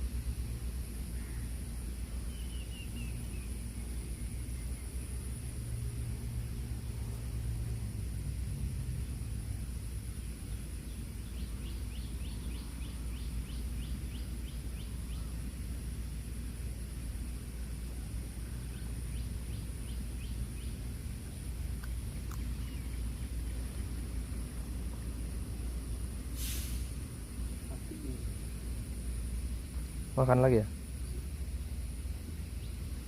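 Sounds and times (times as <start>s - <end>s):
insects droning: 0.0s - 33.0s
ticking chirps: 19.2s - 24.2s.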